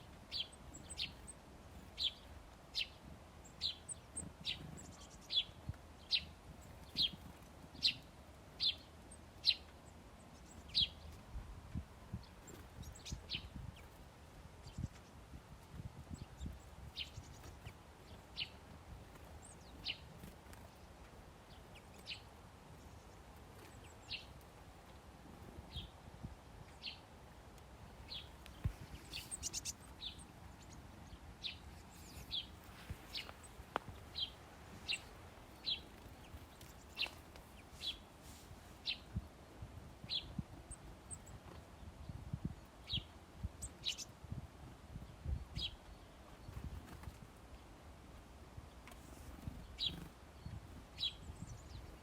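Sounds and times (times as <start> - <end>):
small songbirds chirping: 0.0 - 52.0.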